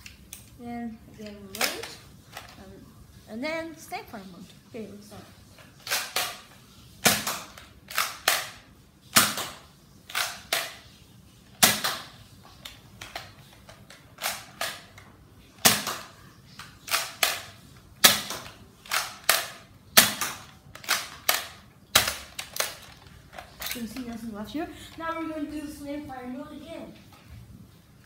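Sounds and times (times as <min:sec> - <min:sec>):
toy dart gun snapping: 0:07.0 - 0:08.6, 0:09.2 - 0:10.8, 0:11.6 - 0:13.3, 0:15.6 - 0:16.1, 0:16.8 - 0:22.9.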